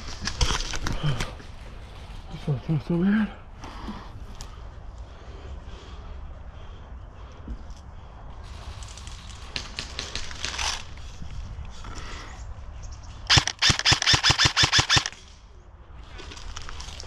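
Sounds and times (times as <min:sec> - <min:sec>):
airsoft rifle firing: 0:13.3 - 0:15.2.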